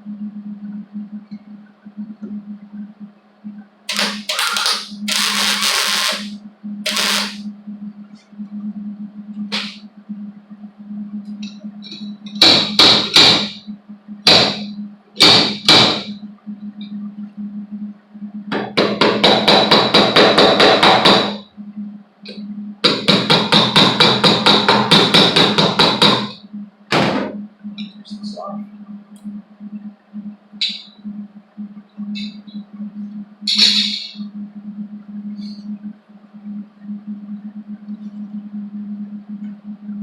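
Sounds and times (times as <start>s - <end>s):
low electrical hum: 0.0s - 40.0s.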